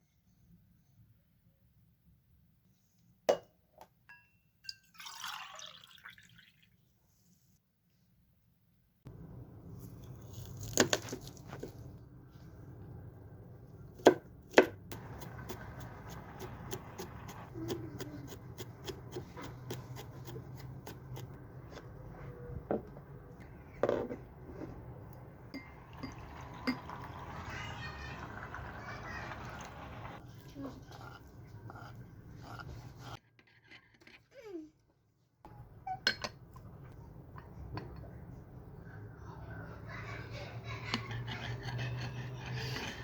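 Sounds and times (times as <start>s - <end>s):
glass clinking: 4.1s - 5.5s, 25.5s - 27.4s
liquid pouring: 4.8s - 6.8s, 25.6s - 30.2s.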